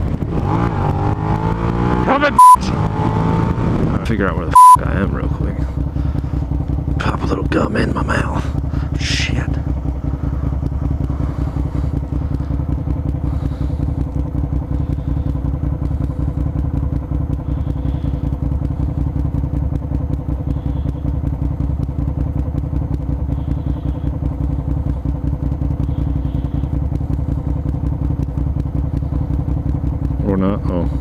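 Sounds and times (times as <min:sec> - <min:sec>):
motorcycle engine running: 0:00.0 - 0:31.0.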